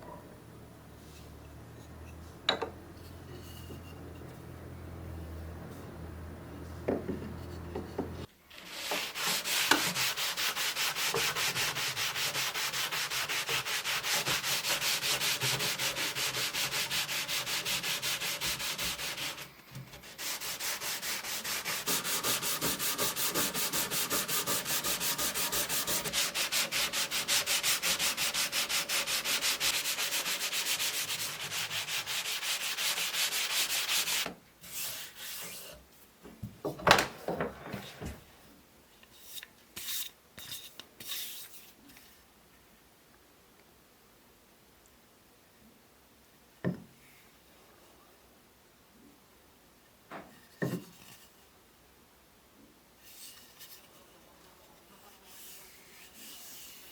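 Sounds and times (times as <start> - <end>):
hand sanding strokes: 8.5 - 35.7.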